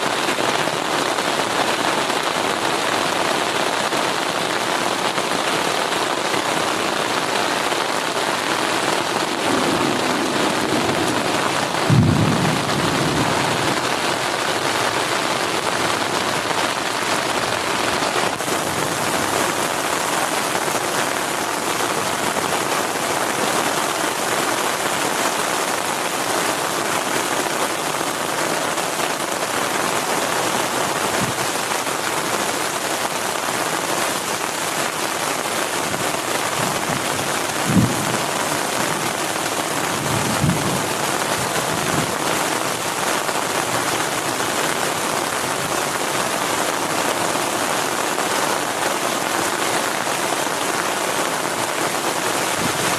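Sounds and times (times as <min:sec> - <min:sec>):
heavy rain on a tent: 0:00.0 - 0:52.9
thunderclap rumbling: 0:09.2 - 0:15.0, 0:36.6 - 0:42.1.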